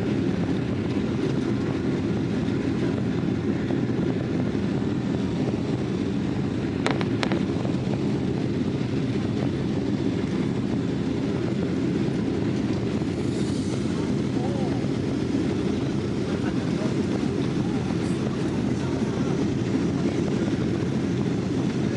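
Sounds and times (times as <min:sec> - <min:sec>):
airliner cabin engine rumble: 0:00.0 - 0:21.9.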